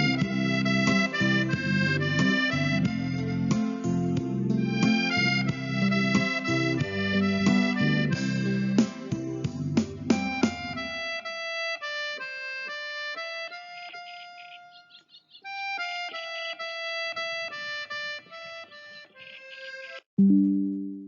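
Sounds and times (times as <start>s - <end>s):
loud low chord: 0.0s - 10.9s
reedy instrumental melody: 0.0s - 21.0s.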